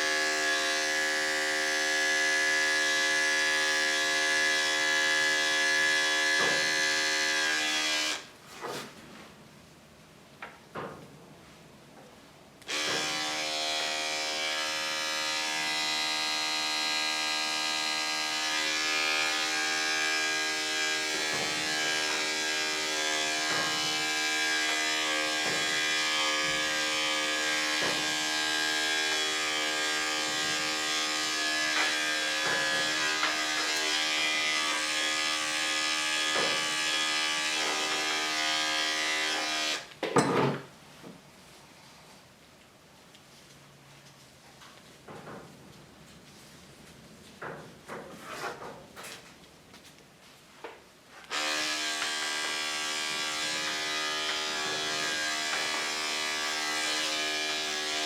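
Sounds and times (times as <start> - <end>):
electric clippers buzzing: 0.0 - 8.3, 12.6 - 39.9, 51.3 - 58.0.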